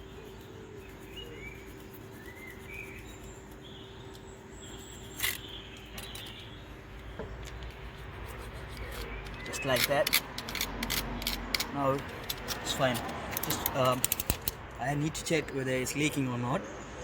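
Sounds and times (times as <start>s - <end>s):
small birds chirping: 0.0s - 10.4s
outdoor ambience: 0.0s - 17.0s
sharp click: 13.4s - 14.6s.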